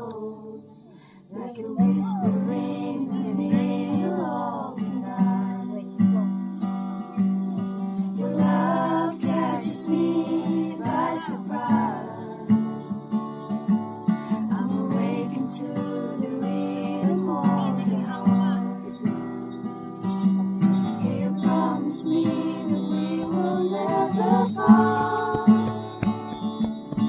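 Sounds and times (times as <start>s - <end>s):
person singing: 0.0s - 6.6s, 8.0s - 13.3s, 14.4s - 19.1s, 21.0s - 26.0s
strummed acoustic guitar: 1.3s - 27.0s.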